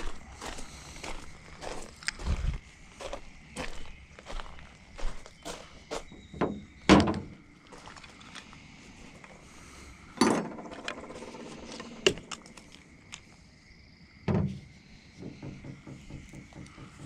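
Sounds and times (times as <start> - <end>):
car parts clunking: 6.1 - 7.5, 14.3 - 17.0.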